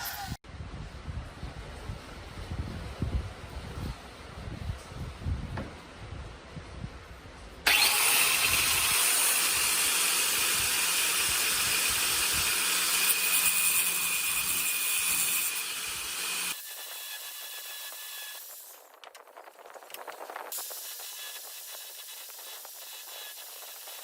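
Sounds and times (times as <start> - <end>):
router high-pitched whine: 7.7 - 18.8, 20.6 - 24.0.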